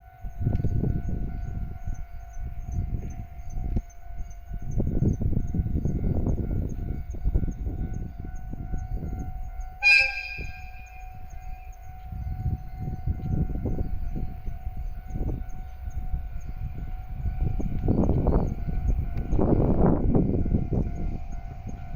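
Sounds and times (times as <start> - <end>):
passing train rumbling: 0.0 - 21.9
level-crossing alarm ringing: 0.1 - 21.9
train horn blast: 9.7 - 11.7.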